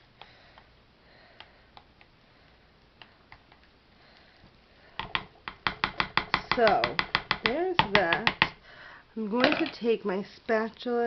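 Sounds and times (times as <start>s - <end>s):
spoon stirring soap batter: 4.8s - 8.6s.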